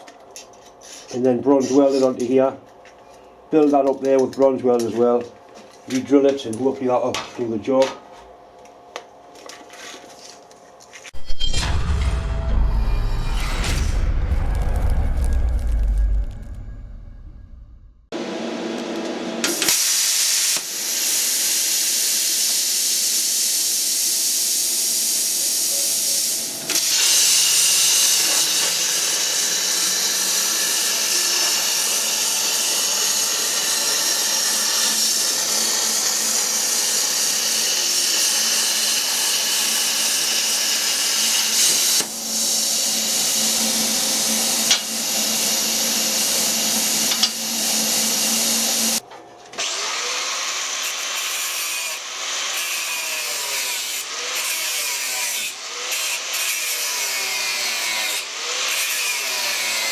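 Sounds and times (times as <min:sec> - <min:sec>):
cutting torch hissing: 0:19.6 - 0:49.0.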